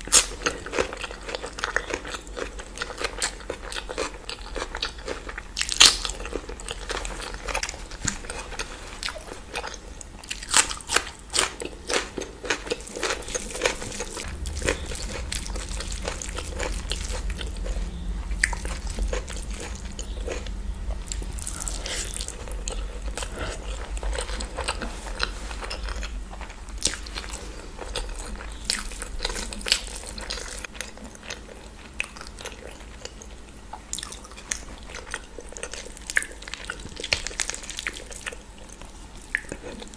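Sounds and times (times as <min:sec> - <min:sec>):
person chewing crunchy food: 0:00.0 - 0:39.9
low rumble: 0:13.4 - 0:30.8.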